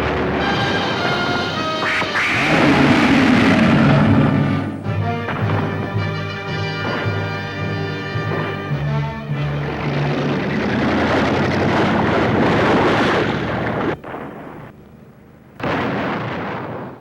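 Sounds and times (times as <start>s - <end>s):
explosion blast and rumble: 1.8s - 6.0s, 15.6s - 17.0s.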